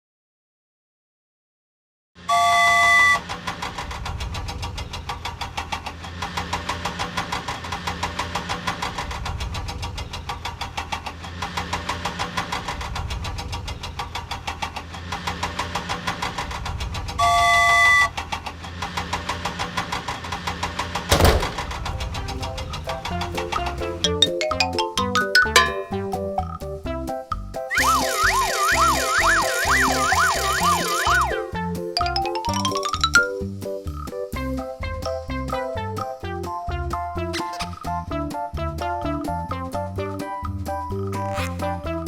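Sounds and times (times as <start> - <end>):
cartoon engine chugging: 21.7 - 26.5, 27.7 - 33.3.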